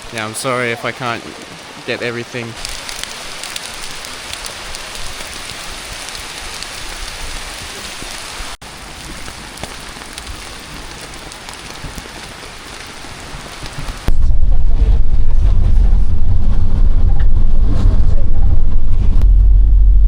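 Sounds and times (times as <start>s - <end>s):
steady rain falling: 0.0s - 19.3s.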